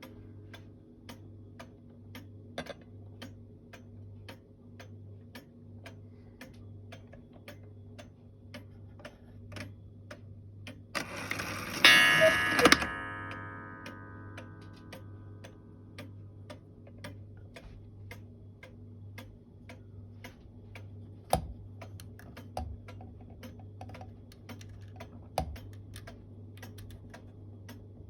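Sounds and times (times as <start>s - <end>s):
cuckoo clock ticking: 10.1s - 17.2s
clock strike mechanism whirring: 11.0s - 16.1s
loud struck note ringing: 11.8s - 14.8s.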